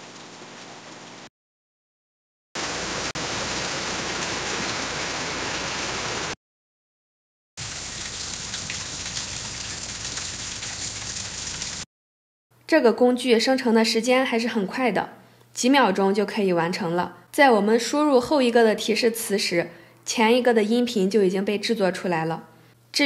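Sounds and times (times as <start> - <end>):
rain pattering: 2.6 - 6.4, 7.6 - 11.8.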